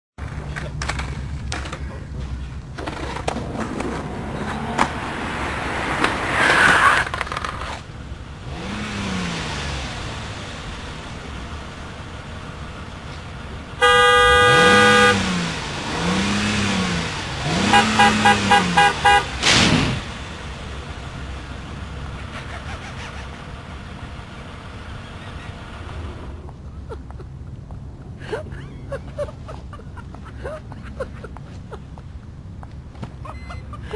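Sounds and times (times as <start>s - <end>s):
road noise: 0.2s - 33.9s
car horn blast: 13.8s - 15.5s, 17.5s - 19.5s.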